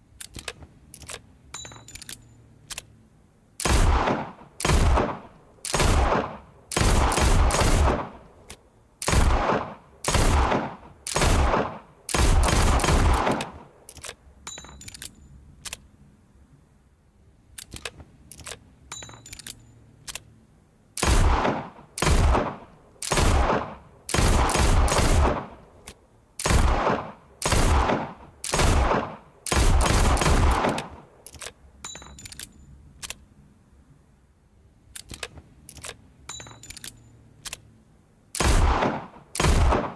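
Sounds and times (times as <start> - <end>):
light metallic gun clicks: 0.1 - 3.0, 3.6 - 9.2, 12.1 - 15.9, 17.5 - 20.4, 27.4 - 33.3, 34.8 - 39.9.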